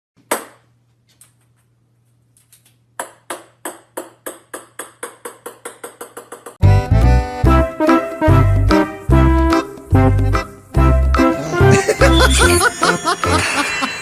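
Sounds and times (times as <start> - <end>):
ping pong ball bouncing: 3.0 - 6.6
music: 6.6 - 14.0.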